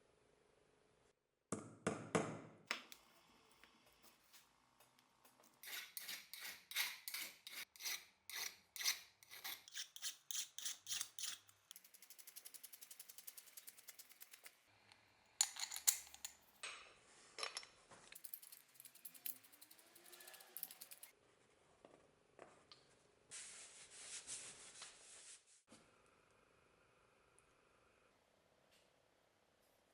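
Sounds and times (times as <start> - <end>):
hand tool scraping axe: 5.6 - 11.5.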